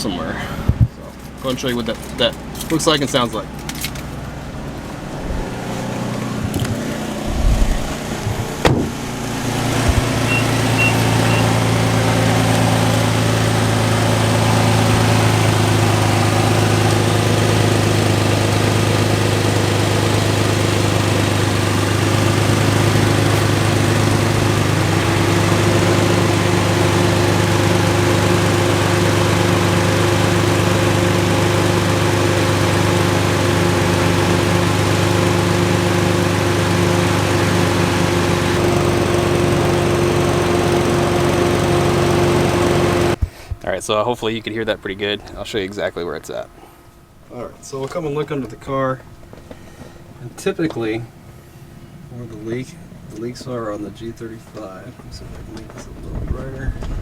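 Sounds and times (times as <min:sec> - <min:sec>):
car engine idling: 0:00.0 - 0:43.2, 0:46.5 - 0:57.0
exhaust leak blowing: 0:00.0 - 0:43.3
knocks: 0:06.5 - 0:10.2.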